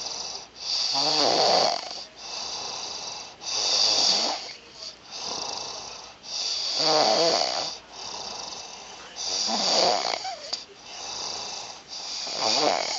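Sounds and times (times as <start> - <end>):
quiet breathing: 0.0 - 1.1, 1.7 - 12.9
man snoring: 0.0 - 12.9.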